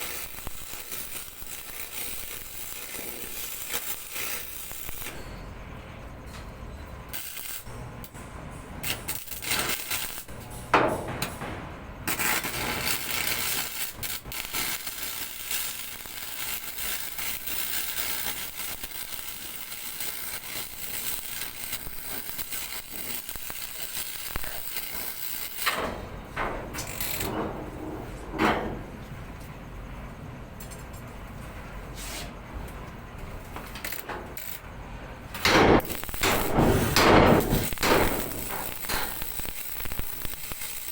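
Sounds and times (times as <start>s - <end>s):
welding crackling hiss: 0.0s - 5.3s, 7.0s - 27.8s, 33.2s - 40.9s
metal knocks and clicks: 10.6s - 11.8s, 25.6s - 29.0s, 35.4s - 39.1s.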